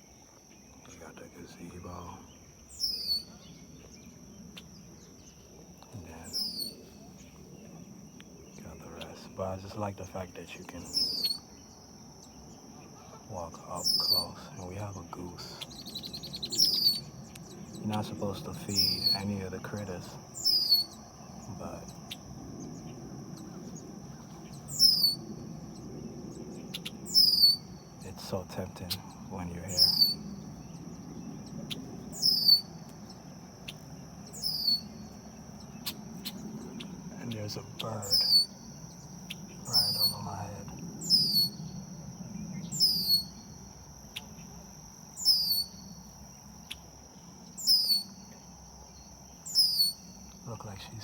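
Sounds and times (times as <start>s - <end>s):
insect drone: 0.0s - 51.0s
bird call: 6.0s - 7.4s, 8.9s - 11.7s, 12.9s - 19.8s, 24.4s - 25.2s, 26.7s - 30.8s, 31.7s - 41.8s, 42.6s - 44.4s, 47.5s - 48.4s, 49.4s - 51.0s.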